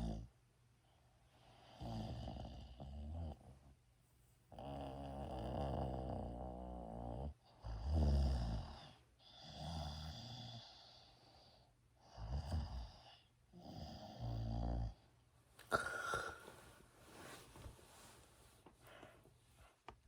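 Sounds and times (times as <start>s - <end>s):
person snoring: 1.6s - 3.4s, 4.6s - 11.1s, 12.1s - 15.0s, 15.7s - 16.6s.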